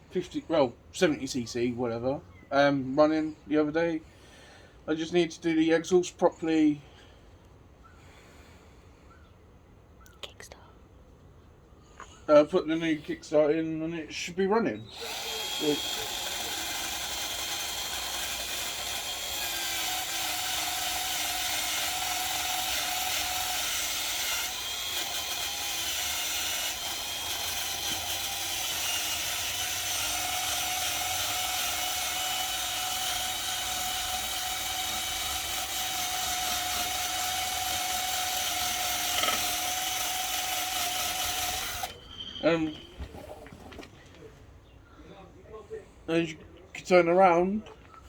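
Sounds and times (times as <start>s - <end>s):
electric drill with wire wheel: 14.9s - 42.8s.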